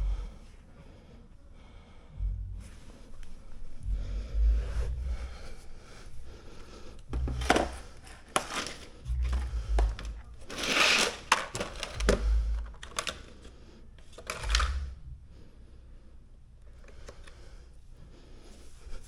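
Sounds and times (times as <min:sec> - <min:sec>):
handling thumps: 0:06.2 - 0:10.6.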